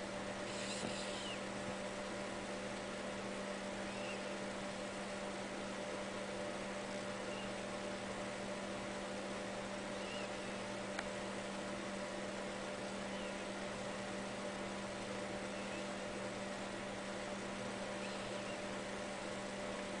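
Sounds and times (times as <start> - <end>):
electrical hum: 0.0 - 20.0
hiss: 0.5 - 1.4.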